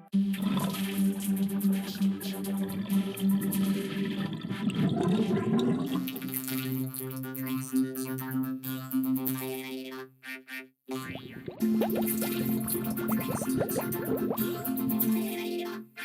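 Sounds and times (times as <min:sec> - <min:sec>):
warbling watery swirl of pitched sound: 0:00.4 - 0:06.2, 0:11.0 - 0:15.0.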